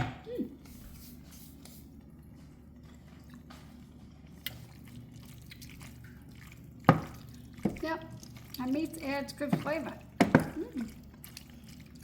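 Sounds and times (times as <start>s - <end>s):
low steady hum: 0.0s - 12.0s
faint chewing: 1.5s - 8.7s, 10.5s - 12.0s.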